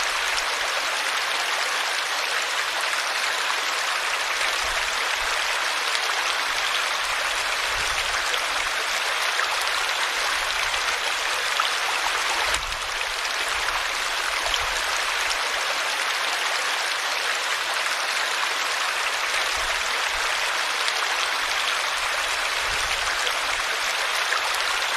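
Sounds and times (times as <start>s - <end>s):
river water rushing: 0.0s - 24.9s.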